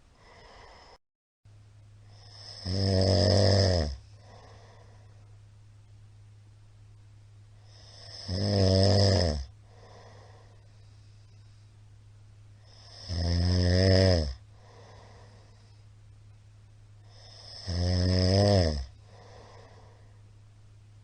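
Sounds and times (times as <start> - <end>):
faint breaths: 0.0 - 1.0, 4.0 - 5.5, 9.6 - 13.1, 14.4 - 17.7, 18.9 - 20.6
man snoring: 2.1 - 4.7, 7.6 - 10.5, 12.6 - 15.4, 17.0 - 19.9.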